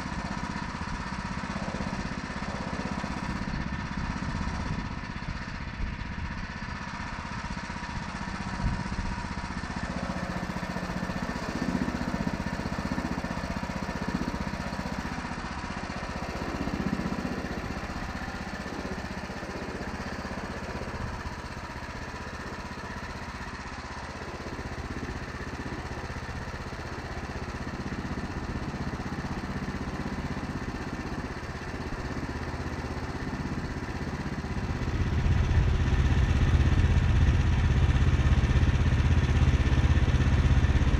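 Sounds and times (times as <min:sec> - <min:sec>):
bandsaw mill cutting log: 0:09.7 - 0:36.8.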